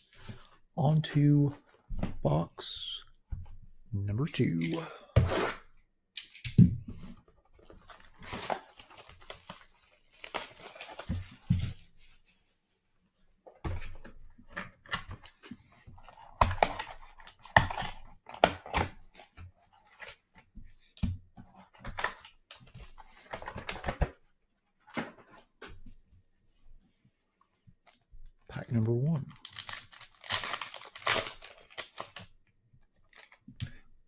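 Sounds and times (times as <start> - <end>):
card packs clicking and rustling: 7.7 - 11.7, 29.3 - 32.4, 33.1 - 33.7
plastic wrap crinkling and tearing: 7.7 - 11.9, 29.3 - 32.4.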